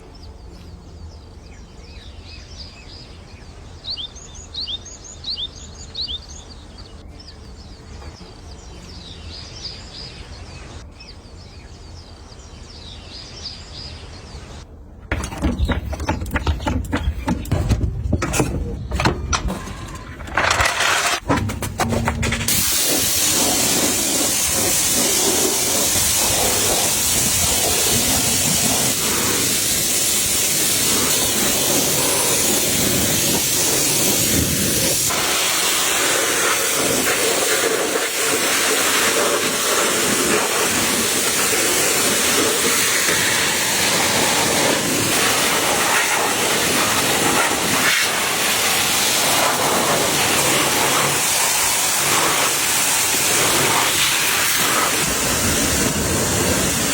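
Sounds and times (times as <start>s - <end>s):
pressure washer spraying: 22.3s - 56.9s.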